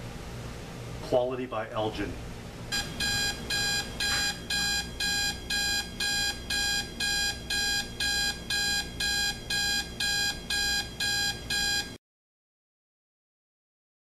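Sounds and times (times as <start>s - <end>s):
alarm clock beeping: 2.7s - 12.0s.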